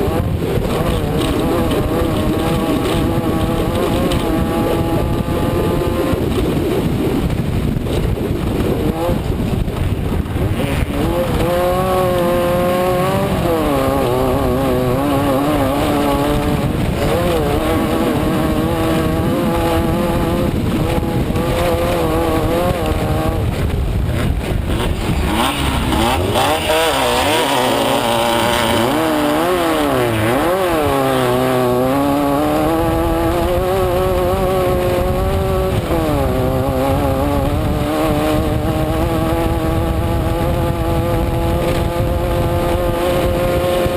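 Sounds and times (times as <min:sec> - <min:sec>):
race car engine revving: 0:00.0 - 0:06.9, 0:08.4 - 0:43.9
rattling rushing noise: 0:00.0 - 0:43.9.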